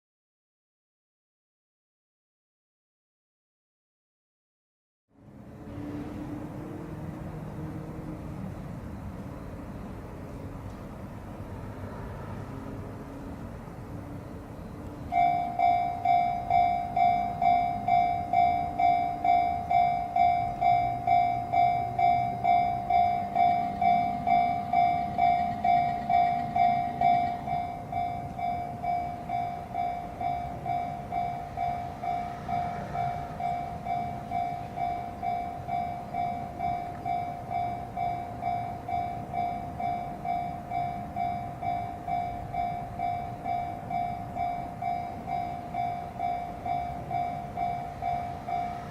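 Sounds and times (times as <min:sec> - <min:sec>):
level crossing electronic bell: 0:15.1 - 0:48.9.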